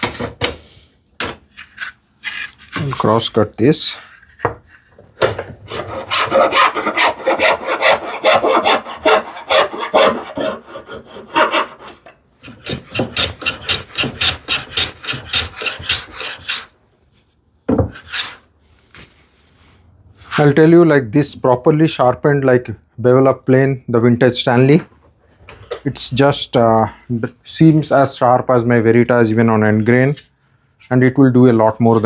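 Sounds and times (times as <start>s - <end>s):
hand tool rasping plywood: 5.7s - 16.7s.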